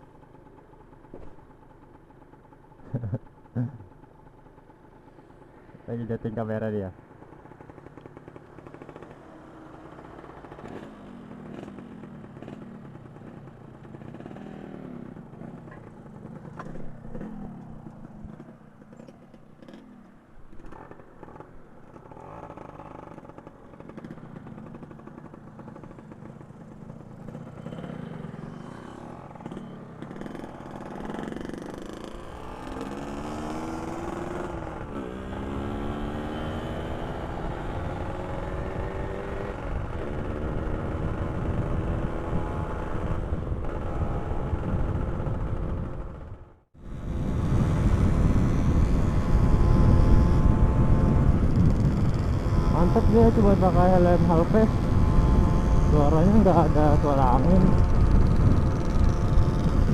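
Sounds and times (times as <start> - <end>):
two-stroke motorcycle engine revving: 7.6 - 20.0, 20.6 - 59.9.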